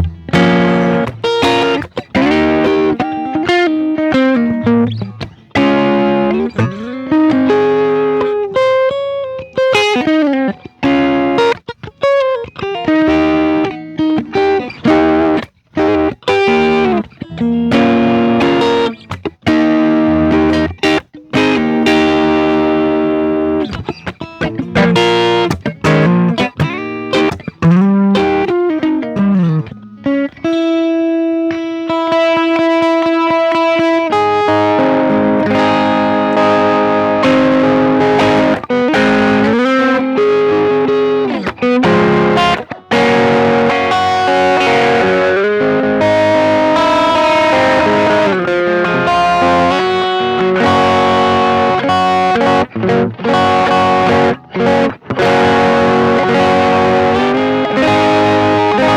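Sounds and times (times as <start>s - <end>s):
driven electric guitar lead: 0.0s - 58.9s.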